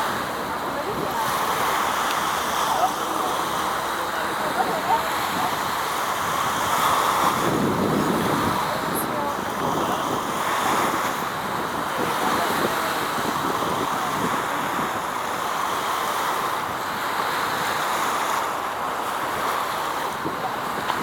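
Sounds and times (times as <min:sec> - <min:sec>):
rushing water: 0:00.0 - 0:21.0
wind: 0:00.0 - 0:21.0.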